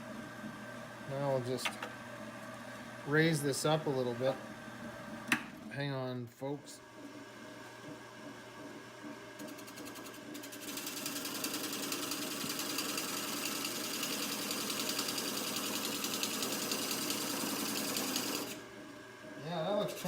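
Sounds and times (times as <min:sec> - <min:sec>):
lathe motor hum: 0:06.8 - 0:20.0.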